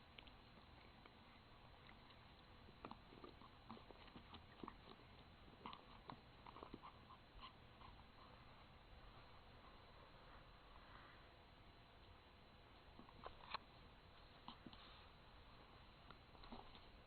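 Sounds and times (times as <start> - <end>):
dog chewing a treat: 0.0 - 8.0, 16.0 - 17.0.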